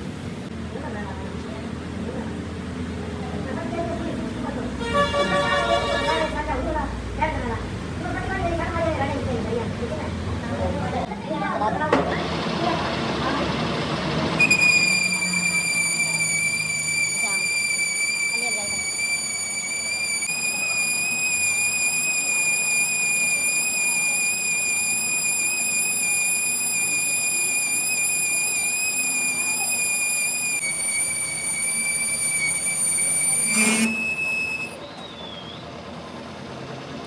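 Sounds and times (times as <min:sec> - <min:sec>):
metal-cutting machine squealing: 0:12.2 - 0:35.6
short higher tone: 0:14.3 - 0:34.8.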